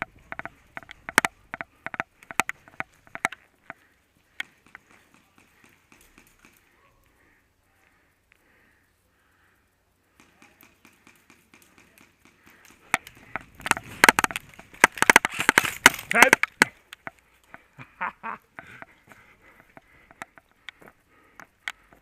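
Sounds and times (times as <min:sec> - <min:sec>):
sharp cracks and clicks: 0:00.0 - 0:06.7, 0:10.1 - 0:17.6.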